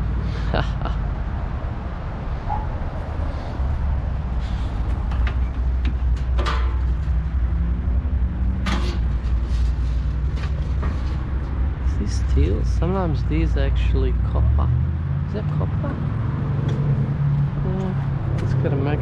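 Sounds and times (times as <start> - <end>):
steady low rumble: 0.0 - 14.7.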